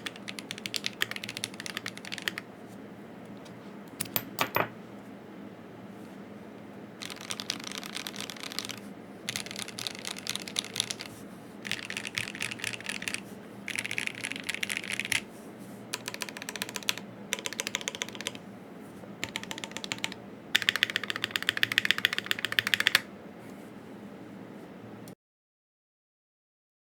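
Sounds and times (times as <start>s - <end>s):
mechanical keyboard typing: 0.0s - 2.4s, 7.0s - 15.2s, 15.9s - 18.4s, 19.2s - 23.1s.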